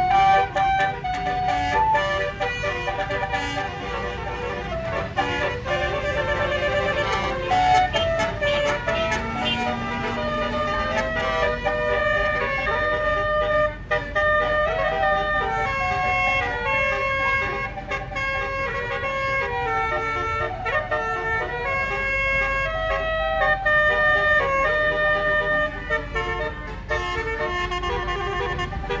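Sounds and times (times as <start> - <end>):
bus horn playing a melody: 0.0 - 29.0.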